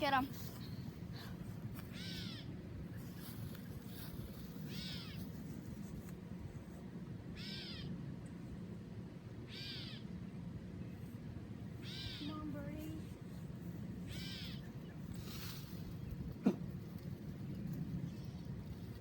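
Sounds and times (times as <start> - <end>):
steady low rumble: 0.0 - 19.0.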